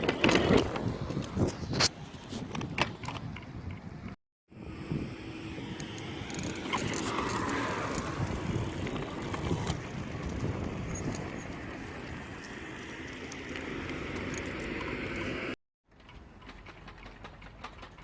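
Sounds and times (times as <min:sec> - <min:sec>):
tyre and wind noise: 0:00.0 - 0:18.0
electric bicycle motor running: 0:04.5 - 0:15.6.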